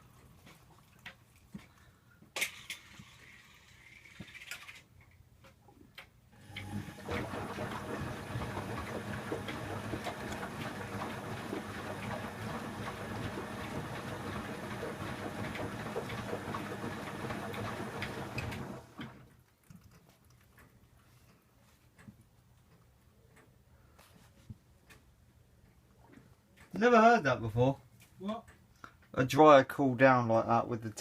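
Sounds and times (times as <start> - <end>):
washing machine motor hum: 6.4 - 19.3
washing machine drum rattling: 6.5 - 19.1.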